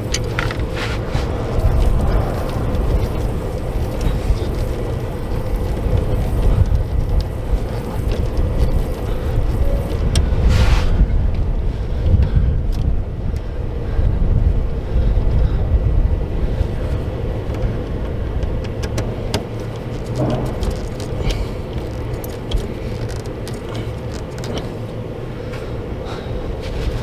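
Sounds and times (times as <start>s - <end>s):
low motor rumble: 0.0s - 27.0s
brief hiss: 10.5s - 11.0s.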